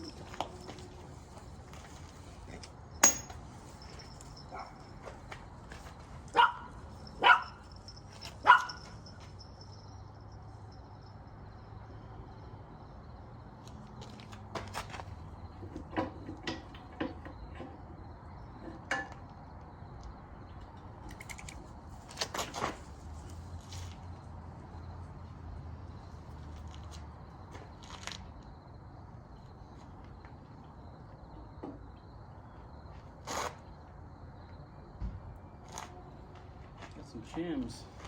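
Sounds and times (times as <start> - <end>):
sharp metal clank: 3.0 - 3.4
dog barking: 4.5 - 4.8, 6.3 - 7.6, 8.4 - 8.9.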